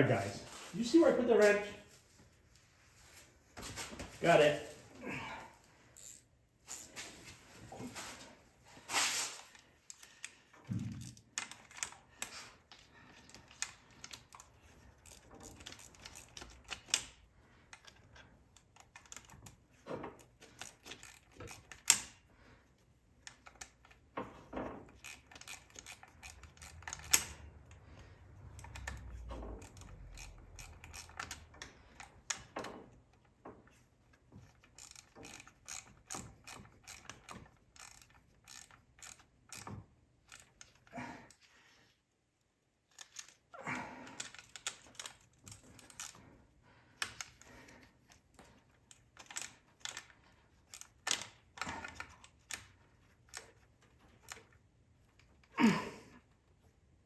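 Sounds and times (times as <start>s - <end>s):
ratchet wrench clicking: 6.0s - 6.9s, 25.0s - 27.8s, 28.5s - 32.4s, 34.6s - 40.6s.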